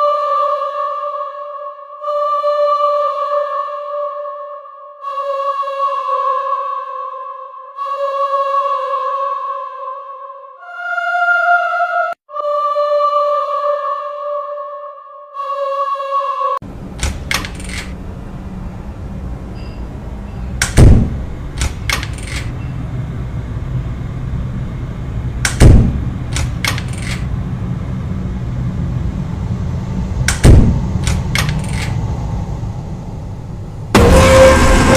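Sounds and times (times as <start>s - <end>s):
low rumble: 16.6s - 34.9s.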